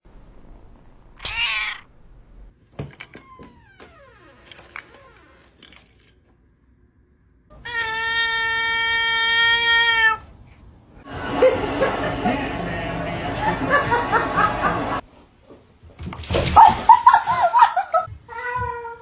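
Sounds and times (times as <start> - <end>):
cat meowing loudly: 1.2 - 1.9, 7.6 - 10.2.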